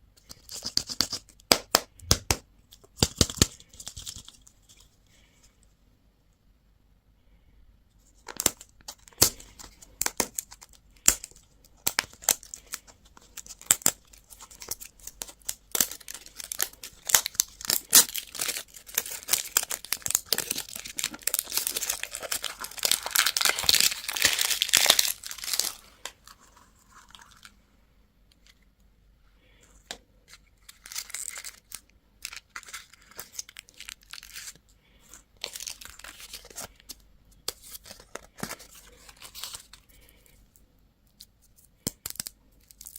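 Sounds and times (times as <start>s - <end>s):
wrapper crinkling and tearing: 8.2s - 27.5s, 30.3s - 40.0s.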